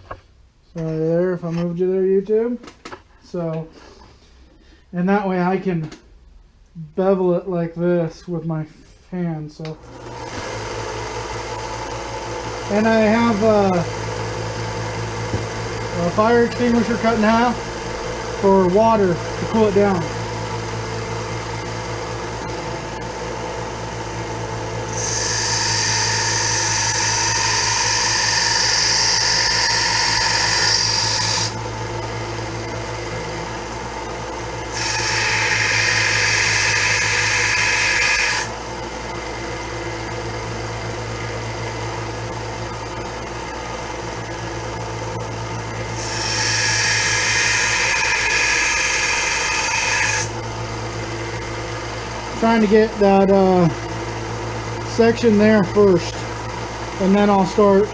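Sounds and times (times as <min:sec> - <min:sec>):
belt sander humming: 0:09.8 - 0:57.9
steel grinding on sanding belt: 0:24.9 - 0:31.6, 0:34.7 - 0:38.5, 0:45.8 - 0:50.3.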